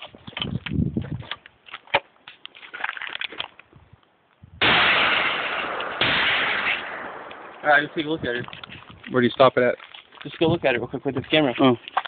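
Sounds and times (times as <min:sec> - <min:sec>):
shotgun blasts: 0:04.6 - 0:08.4.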